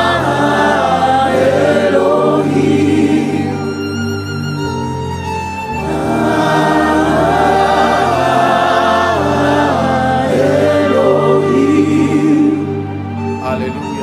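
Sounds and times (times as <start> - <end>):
congregation and choir singing: 0.0 - 4.8, 5.6 - 13.7.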